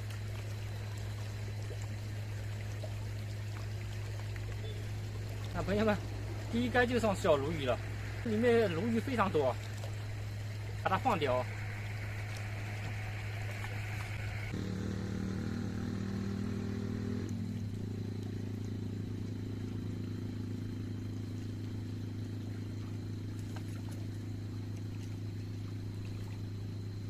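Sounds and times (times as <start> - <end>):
low motor drone: 0.0 - 27.0
higher engine note: 4.5 - 23.6.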